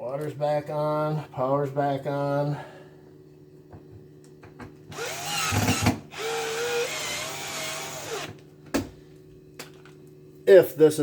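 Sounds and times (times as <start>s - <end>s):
power drill motor whining: 4.9s - 8.4s.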